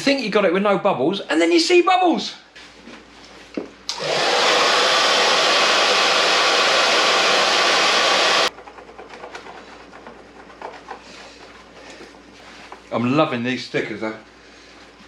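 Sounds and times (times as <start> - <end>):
hair dryer blowing: 3.9 - 8.5.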